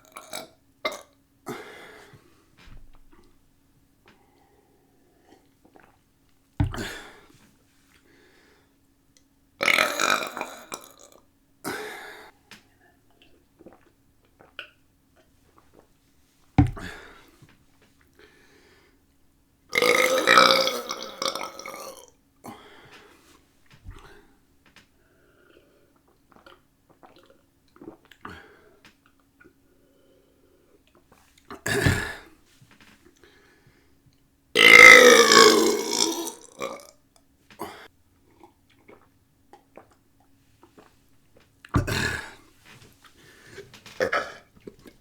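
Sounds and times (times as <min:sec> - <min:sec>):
long loud belch: 0:00.0 - 0:01.1, 0:06.6 - 0:07.1, 0:09.6 - 0:11.2, 0:19.7 - 0:22.1, 0:31.6 - 0:32.3, 0:34.6 - 0:36.9, 0:41.8 - 0:42.4, 0:44.0 - 0:44.4.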